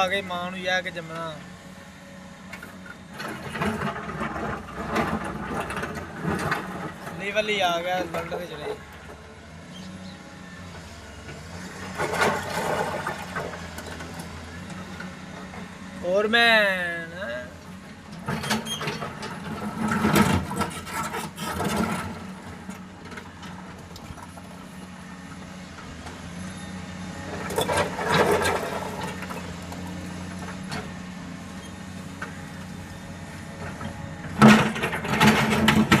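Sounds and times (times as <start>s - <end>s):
heavy vehicle engine humming: 0.0s - 36.0s.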